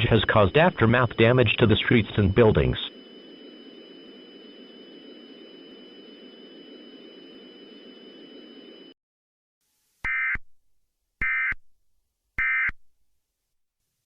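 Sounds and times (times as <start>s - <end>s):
faint high whine: 0.0s - 9.0s
warbling electronic data bursts: 0.0s - 9.0s.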